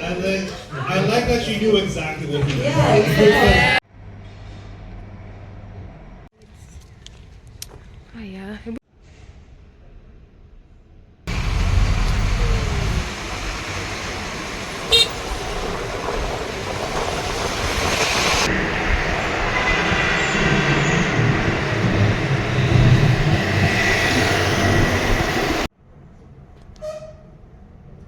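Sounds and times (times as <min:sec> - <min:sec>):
road traffic rumbling: 0:11.3 - 0:25.7.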